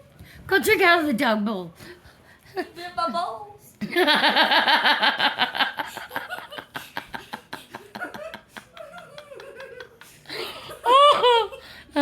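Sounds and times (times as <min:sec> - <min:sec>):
woman laughing hard: 0:03.8 - 0:11.7.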